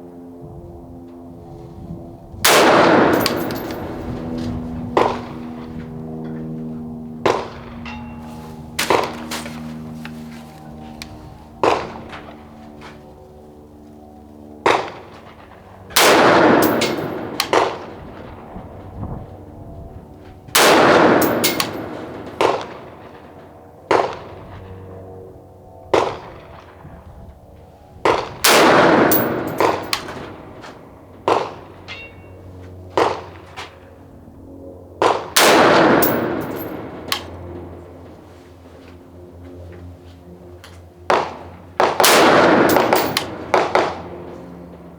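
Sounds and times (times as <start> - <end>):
rifle shots with ringing echo: 2.5 - 5.6, 16.0 - 18.2, 20.6 - 24.4, 28.4 - 30.6, 31.2 - 32.3, 35.0 - 37.8, 41.1 - 44.9.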